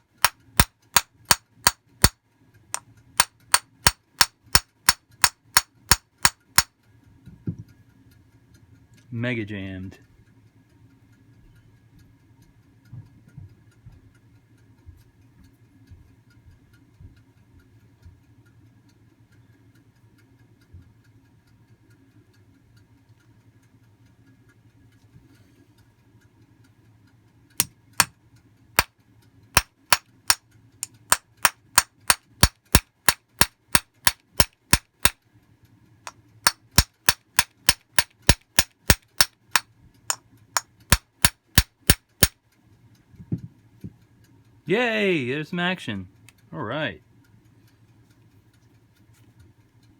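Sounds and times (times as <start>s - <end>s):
sharp metal taps: 0.0s - 2.2s, 3.2s - 6.7s, 29.6s - 35.2s, 36.5s - 42.4s.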